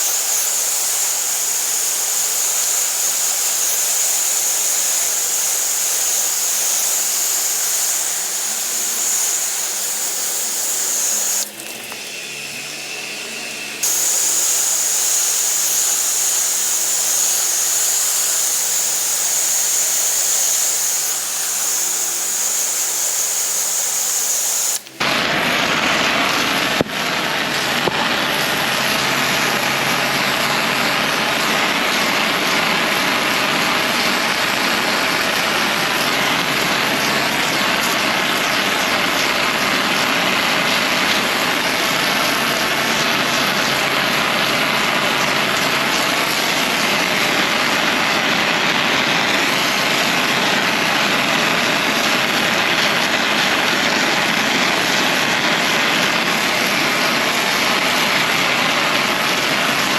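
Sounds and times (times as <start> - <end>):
pressure washer spraying: 0.0 - 25.0.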